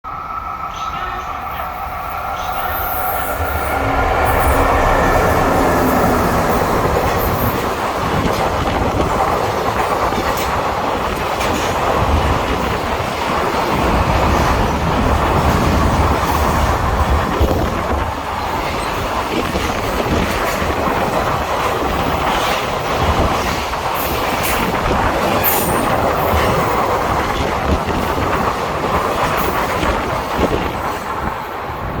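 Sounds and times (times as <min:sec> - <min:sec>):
falling tones: 0:01.4 - 0:08.2
freight wagons rolling past: 0:01.4 - 0:10.7.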